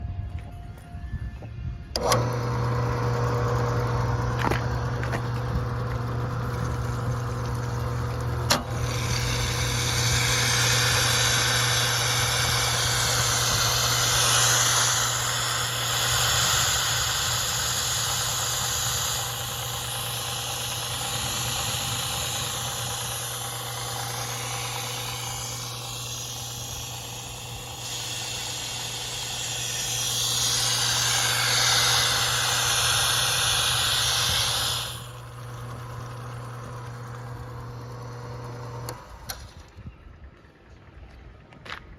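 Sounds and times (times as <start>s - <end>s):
power sprayer humming: 1.9s - 39.5s
sprayer click: 1.9s - 39.7s
high hiss of spray jet: 8.5s - 35.2s.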